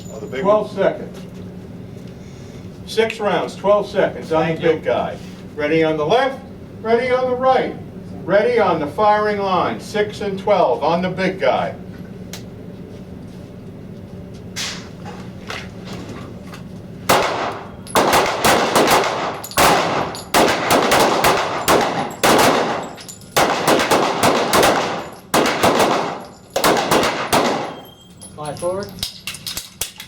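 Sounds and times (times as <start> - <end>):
handgun shots: 17.1 - 27.9.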